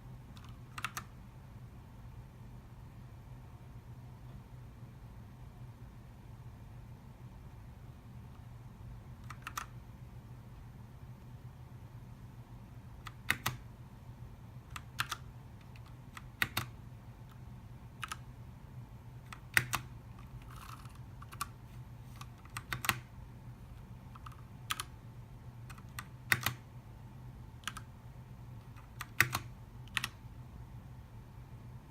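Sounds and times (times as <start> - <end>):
mechanical keyboard key clacks: 9.2 - 9.7, 13.0 - 13.6, 14.7 - 16.7, 22.3 - 23.1, 28.8 - 30.2.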